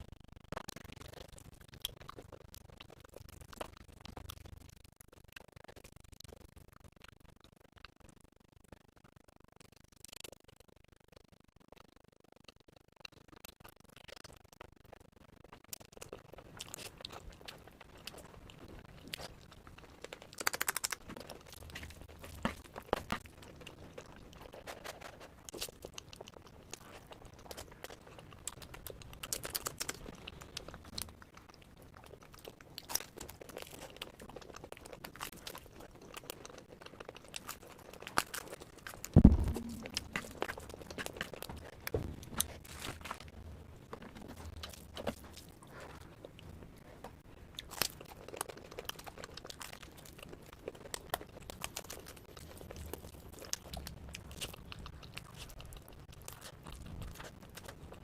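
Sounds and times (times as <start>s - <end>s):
crunching and chewing: 0.0s - 58.0s
crinkling: 15.5s - 58.0s
loud low thump: 39.2s - 40.5s.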